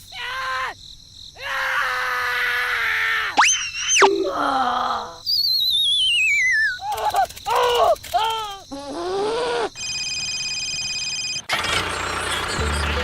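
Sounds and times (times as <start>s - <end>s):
cartoon scream: 1.4s - 5.2s
lower cry: 1.4s - 5.2s
whistle-like sweep: 3.4s - 4.3s, 5.3s - 6.8s
falling whistle: 3.4s - 4.4s, 5.3s - 6.8s.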